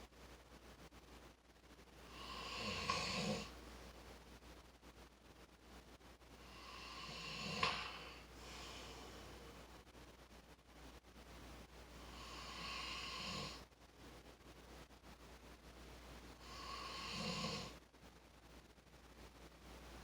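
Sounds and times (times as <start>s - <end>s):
person snoring: 2.1s - 3.5s, 6.5s - 9.1s, 12.1s - 13.6s, 16.4s - 17.8s.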